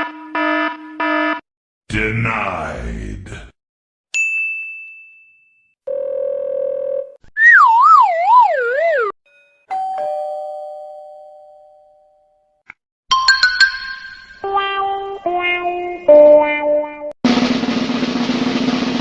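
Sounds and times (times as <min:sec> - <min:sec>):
wavering tone sliding downward: 0:07.4 - 0:09.1
two-note doorbell ding-dong: 0:09.7 - 0:12.2.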